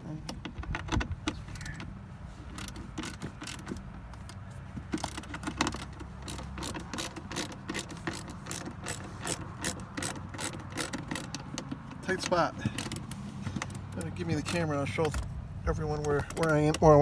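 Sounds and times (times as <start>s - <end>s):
metal and plastic knocks: 0.3s - 17.0s
ratchet clicking: 2.5s - 15.3s.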